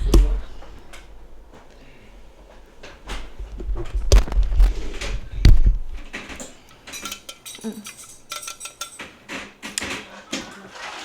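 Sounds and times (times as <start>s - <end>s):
dull thumps and knocks: 0.0s - 1.7s, 2.8s - 6.4s
dishes and cutlery clinking: 6.0s - 11.0s.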